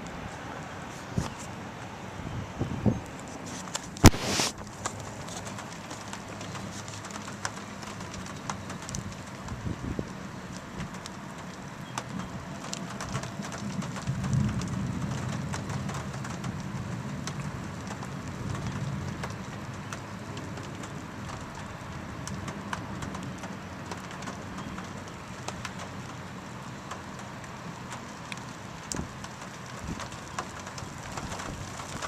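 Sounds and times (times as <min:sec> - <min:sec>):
rain pattering: 0:00.0 - 0:32.0
thunder rumble: 0:07.8 - 0:26.3.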